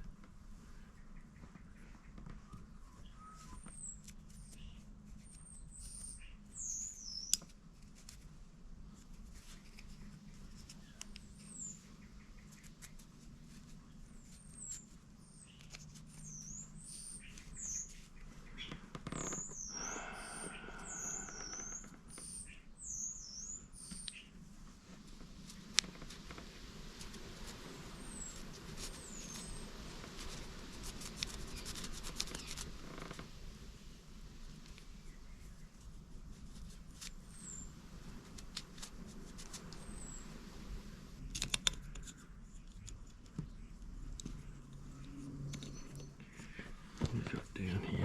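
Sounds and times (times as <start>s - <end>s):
small bird chirping: 0.8s - 7.5s, 9.7s - 13.0s, 13.8s - 24.4s, 26.9s - 32.8s, 36.6s - 37.9s, 39.5s - 41.0s.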